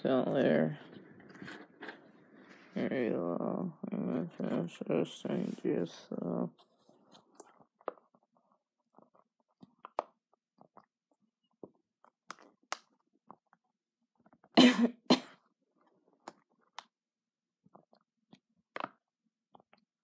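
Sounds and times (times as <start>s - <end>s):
person coughing: 14.6s - 15.4s.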